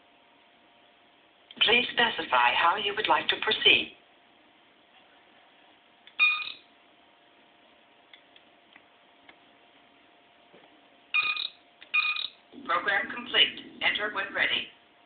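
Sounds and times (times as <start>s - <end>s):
faint steady hum: 0.0s - 15.0s
electronic computer chirp: 6.1s - 6.6s, 11.1s - 12.4s.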